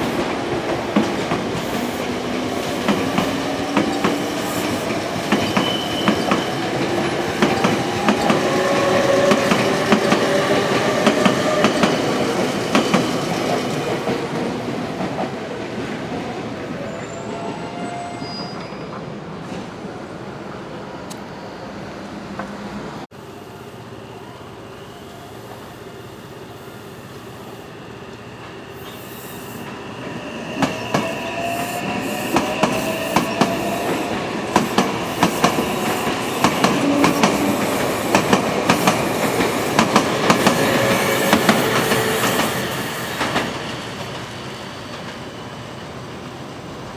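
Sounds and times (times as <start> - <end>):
electric train passing: 0.0 - 46.9
high wheel squeal: 3.3 - 11.8.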